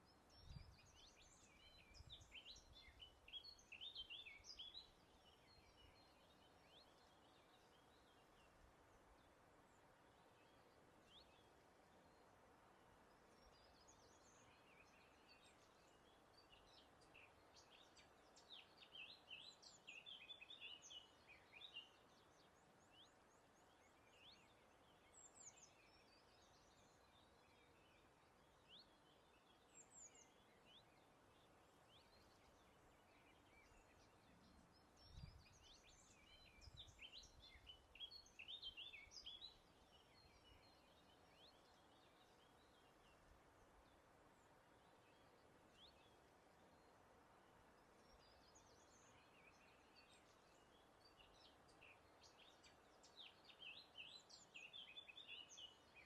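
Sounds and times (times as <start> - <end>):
faint background hiss: 0.0 - 56.0
songbirds chirping and trilling: 0.0 - 56.0.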